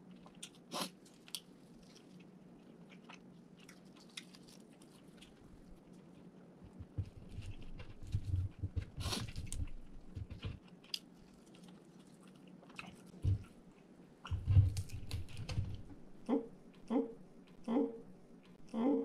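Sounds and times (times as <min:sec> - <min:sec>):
crunchy chewing: 0:00.0 - 0:15.9.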